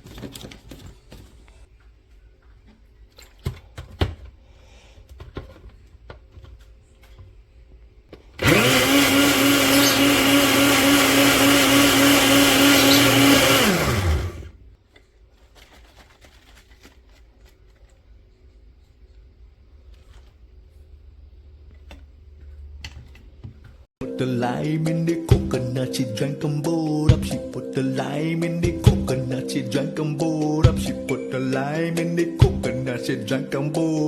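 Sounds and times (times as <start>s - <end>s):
blender motor whirring: 8.4s - 14.6s.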